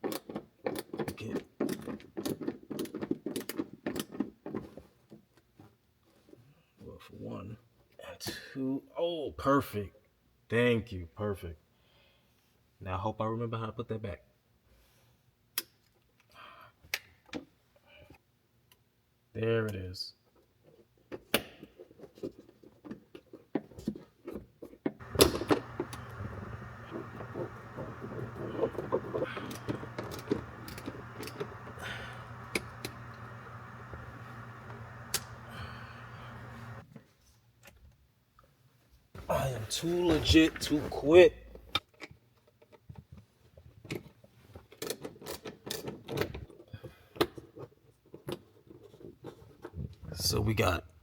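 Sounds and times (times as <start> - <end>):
clicks and knocks of handling: 25.0 - 36.8
steady low hum: 25.0 - 36.8.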